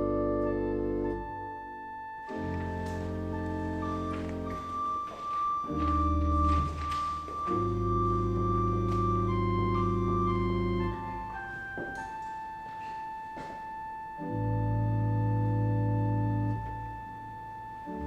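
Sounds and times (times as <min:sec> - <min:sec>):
organ playing slow chords: 0:00.0 - 0:18.0.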